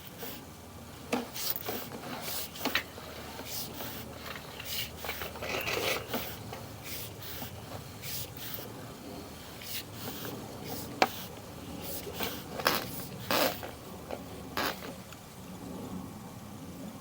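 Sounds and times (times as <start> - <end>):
cable rubbing and scraping: 1.1 - 8.8, 9.6 - 15.1.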